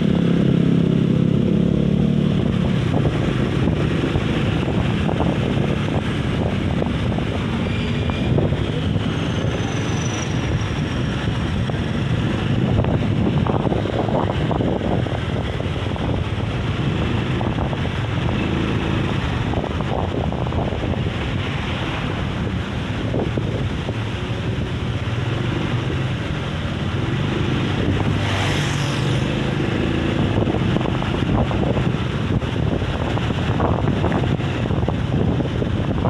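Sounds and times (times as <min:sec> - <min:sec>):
wind buffeting microphone: 0:00.0 - 0:36.0.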